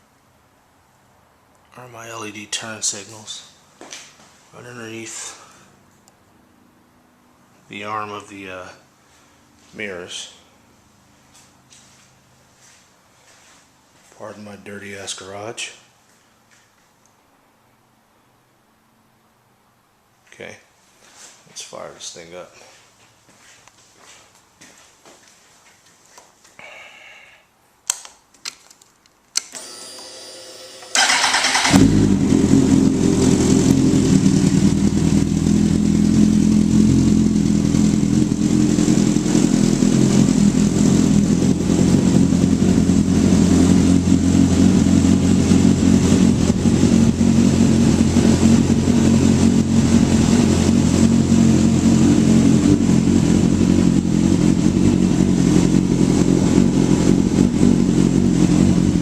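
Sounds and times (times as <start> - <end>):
engine cranking whir: 29.5 - 32.5
motorcycle engine idling: 31.0 - 59.0.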